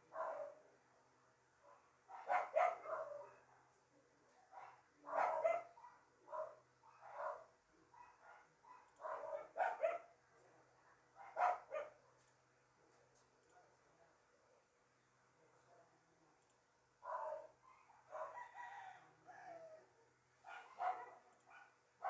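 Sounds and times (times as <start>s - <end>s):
dogs barking: 1.7s - 3.5s, 4.6s - 10.1s, 11.2s - 12.0s, 17.0s - 18.5s, 20.4s - 21.8s.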